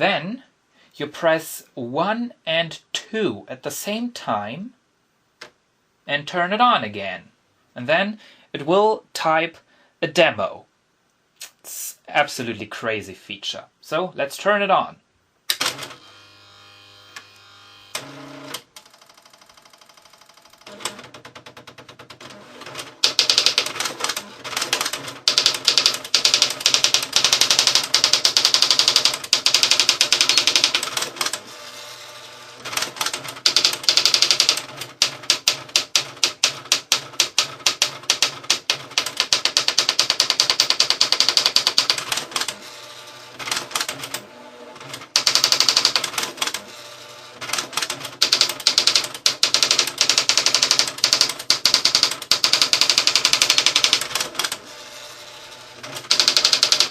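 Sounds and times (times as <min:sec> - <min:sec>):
electronic typewriter typing: 0:18.0 - 0:44.2, 0:44.8 - 0:56.9.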